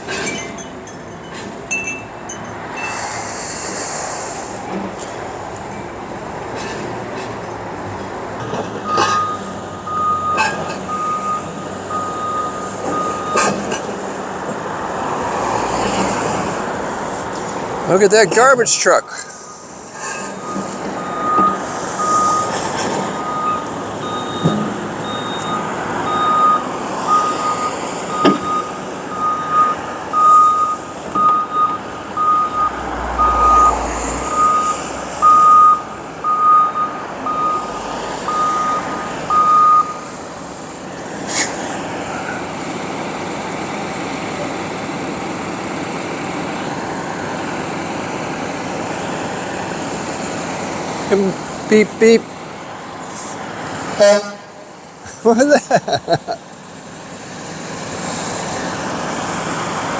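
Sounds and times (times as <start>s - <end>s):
reversing alarm beeping: 8.8s - 13.6s, 18.9s - 40.1s.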